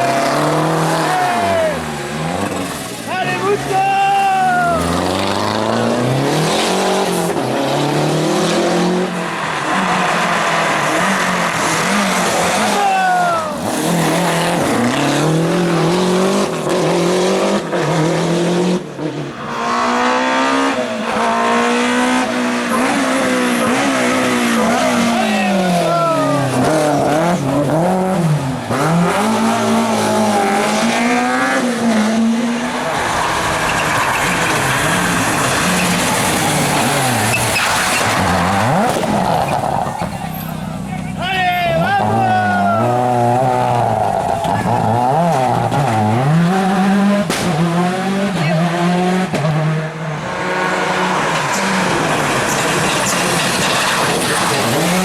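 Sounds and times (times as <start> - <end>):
rally car engine revving: 0.0 - 55.0.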